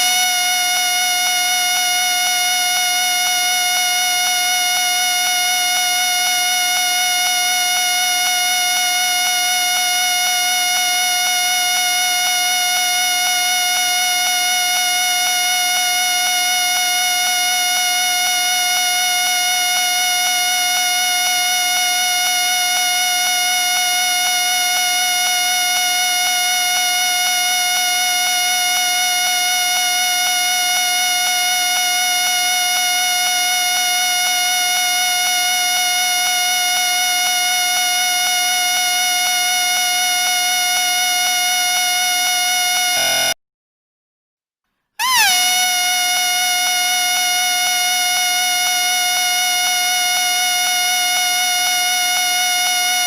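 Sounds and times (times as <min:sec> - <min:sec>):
whistle steady tone: 0:00.0 - 0:43.4, 0:45.0 - 0:53.0.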